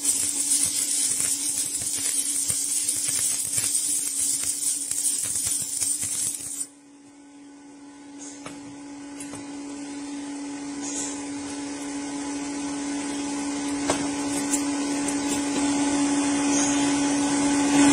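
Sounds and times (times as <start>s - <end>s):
welding arc crackling and hissing: 0.0s - 6.7s, 13.9s - 15.8s
steady motor-like hum: 0.0s - 17.9s.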